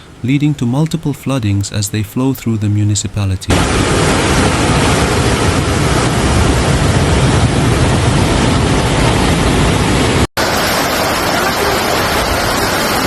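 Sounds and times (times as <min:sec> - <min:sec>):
floodwater rushing roar: 0:03.5 - 0:13.0.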